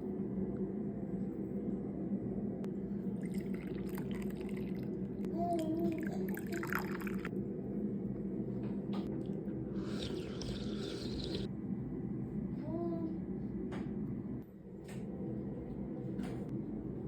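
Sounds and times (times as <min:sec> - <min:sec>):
steady low hum: 0:00.0 - 0:17.0
tea pouring and dripping: 0:03.2 - 0:05.0, 0:05.9 - 0:07.3, 0:09.8 - 0:11.5.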